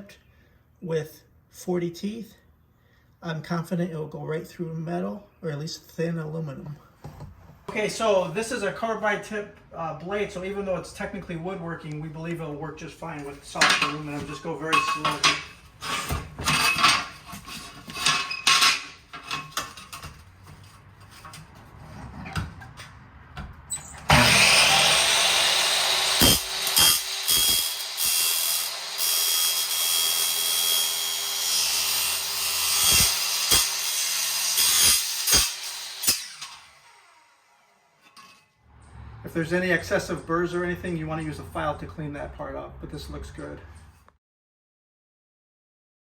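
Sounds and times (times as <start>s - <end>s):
power saw cutting aluminum: 13.2s - 21.4s, 23.7s - 38.4s.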